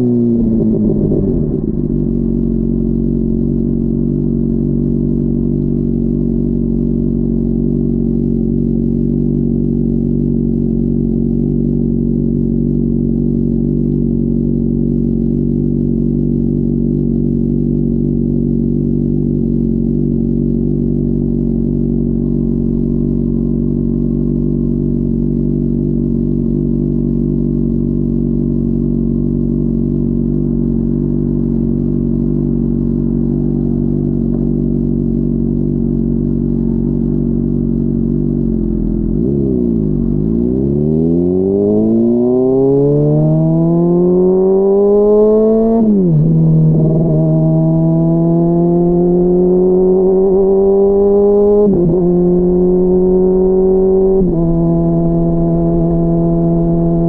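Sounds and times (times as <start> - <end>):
motorcycle engine idling: 0.0 - 40.3.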